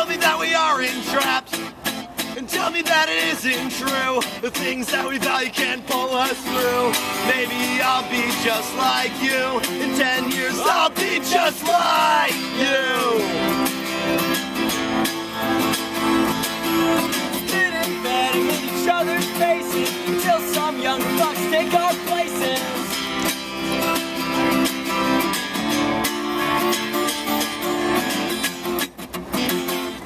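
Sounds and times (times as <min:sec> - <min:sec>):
acoustic guitars strumming: 0:00.0 - 0:30.0
wavering lead guitar melody: 0:00.0 - 0:30.0.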